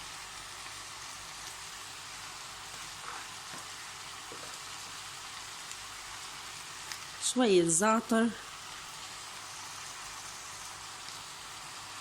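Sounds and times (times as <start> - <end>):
meat sizzling in a pan: 0.0 - 12.0.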